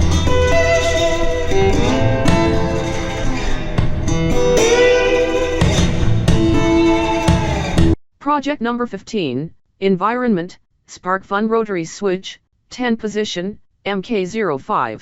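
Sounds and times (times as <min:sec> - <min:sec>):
guitar-led intro music: 0:00.0 - 0:08.0.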